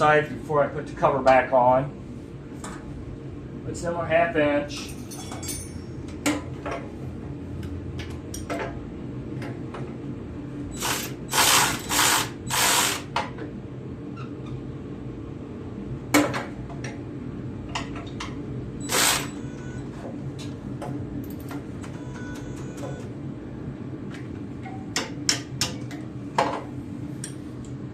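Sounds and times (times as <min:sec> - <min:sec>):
metal tools clicking and knocking: 0:04.8 - 0:06.4.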